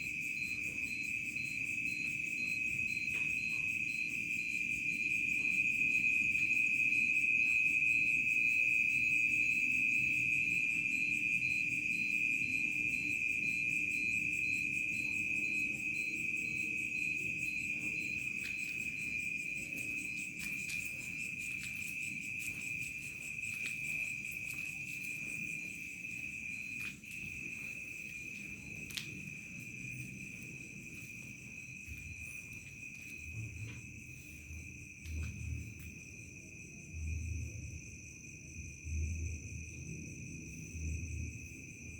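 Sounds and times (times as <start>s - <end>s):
crickets chirring: 0.0s - 41.9s
faint high insect tones: 0.0s - 41.9s.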